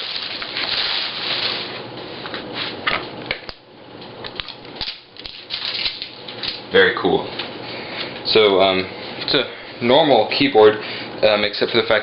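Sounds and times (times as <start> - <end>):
plastic wrapping rustling: 0.0 - 1.9, 5.2 - 6.4.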